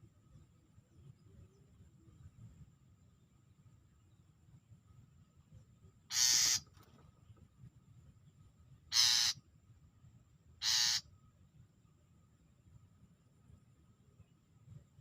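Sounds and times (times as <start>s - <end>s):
shrike harsh rasping calls: 6.1s - 6.6s, 8.9s - 9.4s, 10.6s - 11.0s.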